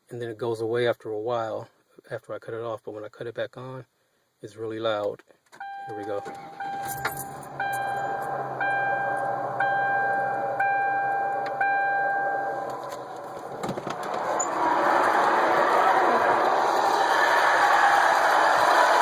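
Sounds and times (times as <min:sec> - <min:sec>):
car warning chime: 0:05.6 - 0:13.6
rushing mechanical noise: 0:06.2 - 0:19.0.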